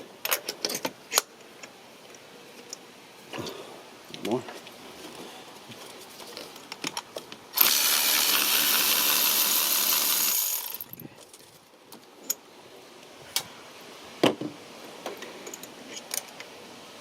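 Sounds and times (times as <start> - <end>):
power tool whirring: 7.6 - 11.0.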